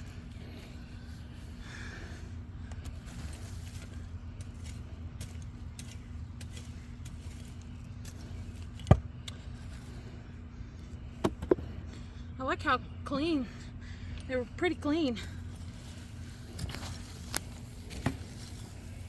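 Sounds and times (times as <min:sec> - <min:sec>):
digging in garden soil: 0:00.0 - 0:19.0
steady low hum: 0:00.0 - 0:19.0.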